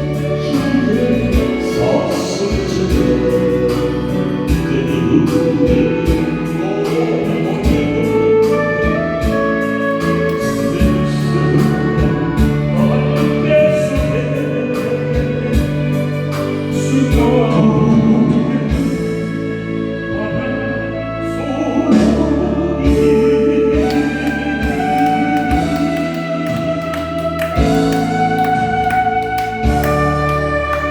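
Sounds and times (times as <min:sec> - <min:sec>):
person singing karaoke: 0:00.0 - 0:30.9
recorded backing track: 0:00.0 - 0:30.9
steady drum beat: 0:12.0 - 0:12.8, 0:23.8 - 0:30.9.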